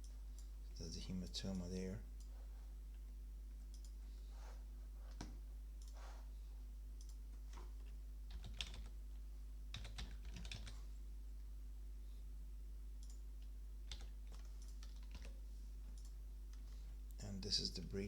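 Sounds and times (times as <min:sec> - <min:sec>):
low electrical hum: 0:00.0 - 0:18.0
keyboard and mouse clicking: 0:03.7 - 0:04.0, 0:07.0 - 0:07.2, 0:13.0 - 0:13.2, 0:13.9 - 0:15.4, 0:16.0 - 0:16.6.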